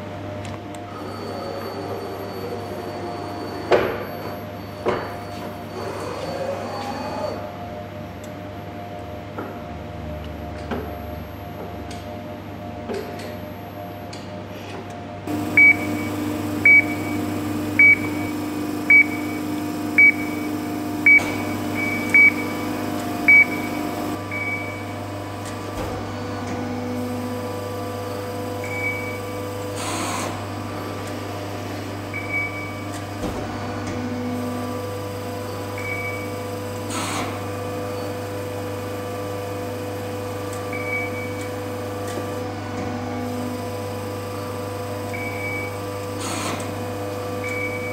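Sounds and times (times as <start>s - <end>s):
short high beeps: 15.3s - 24.9s
hydraulic press humming: 15.3s - 47.9s.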